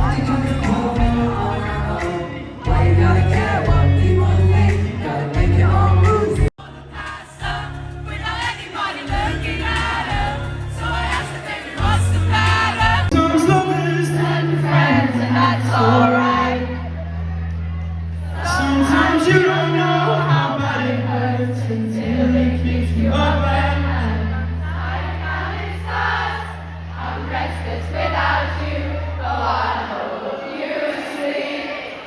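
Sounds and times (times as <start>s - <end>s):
live band music: 0.0s - 15.9s
person singing: 0.0s - 16.9s.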